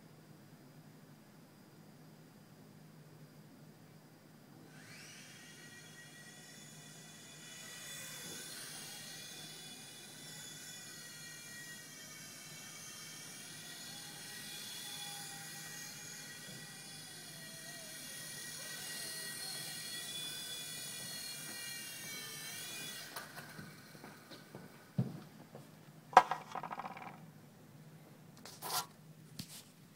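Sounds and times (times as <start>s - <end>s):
rc helicopter motor whine: 4.6s - 24.5s.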